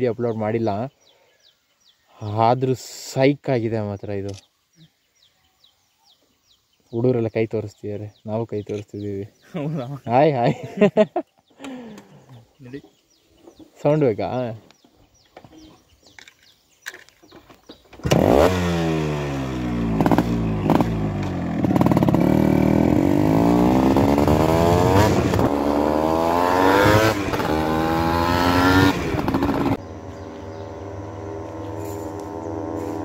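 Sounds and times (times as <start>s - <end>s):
motorcycles revving: 18.0s - 33.0s
low engine hum: 27.0s - 33.0s.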